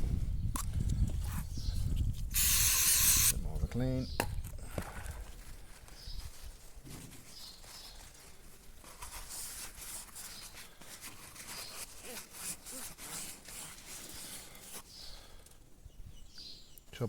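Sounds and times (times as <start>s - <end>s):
abrasive tape scratching metal: 2.3s - 3.4s, 11.6s - 14.8s.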